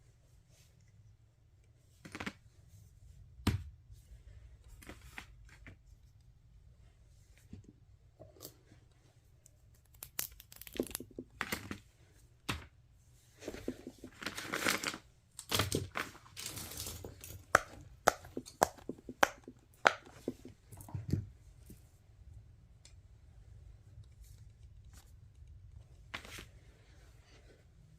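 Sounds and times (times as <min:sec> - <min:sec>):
crinkling and rustling: 0:07.2 - 0:21.9, 0:23.8 - 0:27.8.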